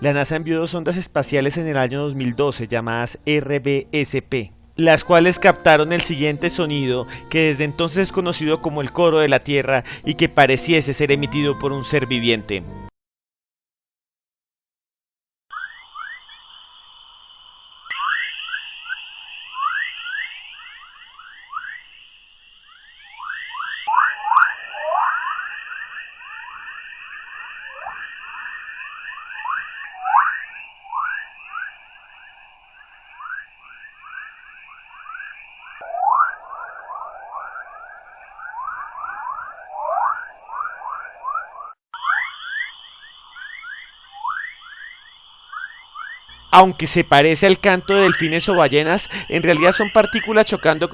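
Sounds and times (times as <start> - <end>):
steady high hiss: 2.5 - 5.5, 46.3 - 50.9
rising chirps: 15.5 - 50.9.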